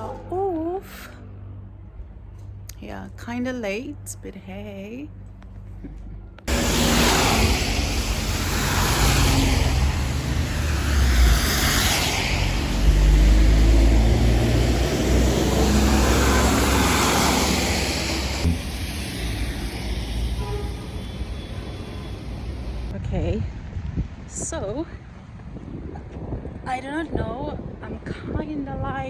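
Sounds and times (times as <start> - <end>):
traffic rumble: 0.0 - 23.0.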